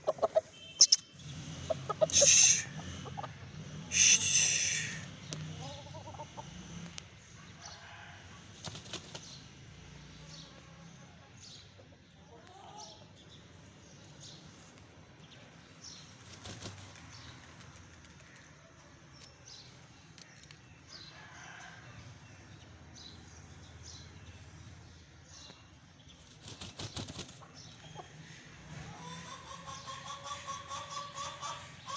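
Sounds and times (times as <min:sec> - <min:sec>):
small birds chirping: 0:00.0 - 0:07.8, 0:08.4 - 0:21.2, 0:22.5 - 0:31.9
chicken wings flapping: 0:08.5 - 0:09.3, 0:16.2 - 0:18.2, 0:26.2 - 0:27.6.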